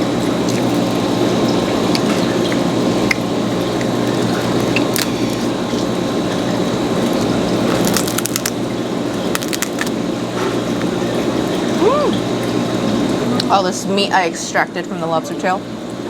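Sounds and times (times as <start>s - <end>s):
lobster shell cracking: 4.4s - 5.6s, 7.0s - 10.0s.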